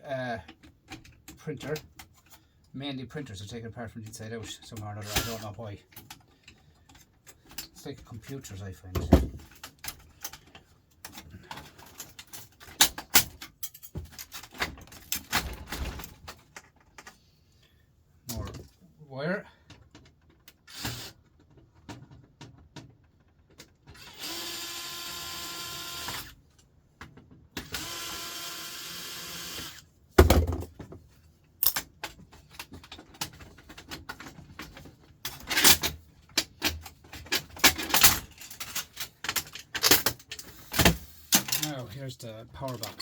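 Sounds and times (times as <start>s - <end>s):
metal and plastic parts clattering: 4.4s - 17.2s, 19.7s - 24.0s, 30.2s - 43.0s
power drill spinning: 20.7s - 21.1s, 24.0s - 26.3s, 27.6s - 29.8s.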